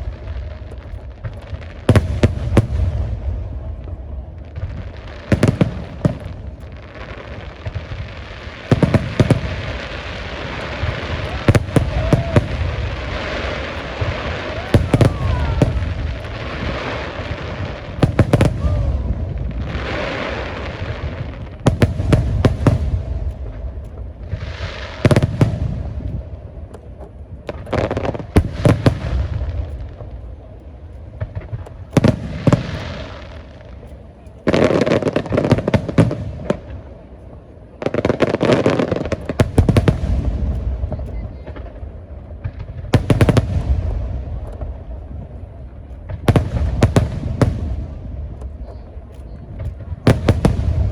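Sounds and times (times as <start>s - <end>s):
fireworks hissing and crackling: 0.0s - 50.9s
firework shells bursting: 4.5s - 26.2s.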